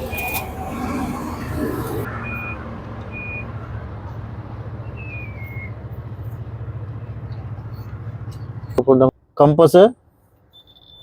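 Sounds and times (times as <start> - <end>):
short high beep: 10.5 - 11.0.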